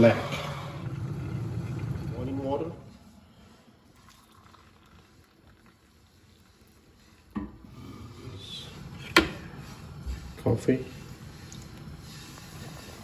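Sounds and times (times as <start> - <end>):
boiling water poured into cup: 0.0 - 7.4, 11.2 - 13.0.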